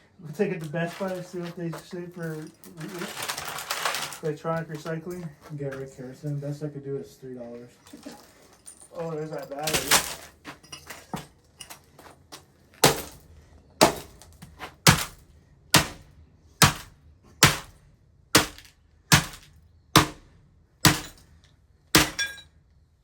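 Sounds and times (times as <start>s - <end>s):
broken parts rattling: 0.3s - 6.0s, 7.8s - 12.0s, 22.0s - 22.5s
laptop being smashed: 9.6s - 10.4s, 12.8s - 13.2s, 13.8s - 15.2s, 16.6s - 17.8s, 18.4s - 20.2s, 20.8s - 21.2s, 22.0s - 22.4s.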